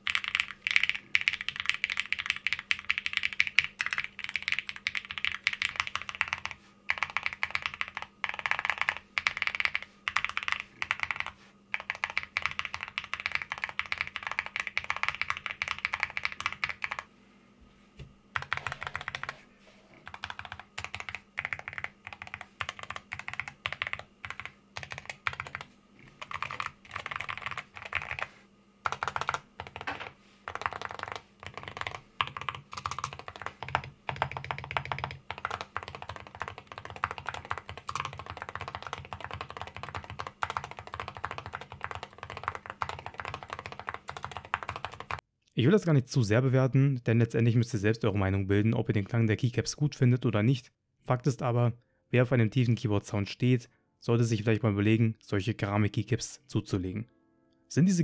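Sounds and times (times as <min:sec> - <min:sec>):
mechanical keyboard typing: 0:00.0 - 0:17.1, 0:18.4 - 0:19.4, 0:20.0 - 0:45.2.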